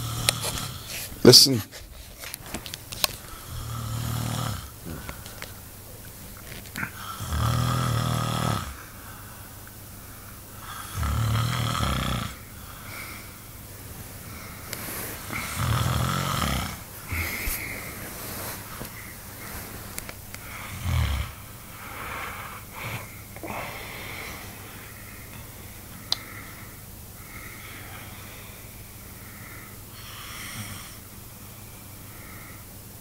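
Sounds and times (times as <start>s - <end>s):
man snoring: 0.0s - 0.9s, 3.3s - 5.0s, 6.8s - 8.8s, 10.6s - 13.0s, 15.2s - 18.0s, 20.4s - 24.6s, 29.9s - 31.0s
quiet breathing: 8.6s - 11.1s, 12.3s - 33.0s.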